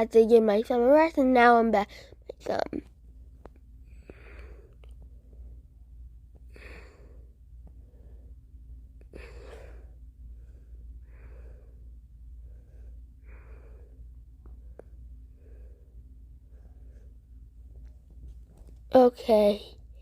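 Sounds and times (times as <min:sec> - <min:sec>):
steady low hum: 0:00.0 - 0:20.0
person breathing out heavily: 0:09.1 - 0:14.0.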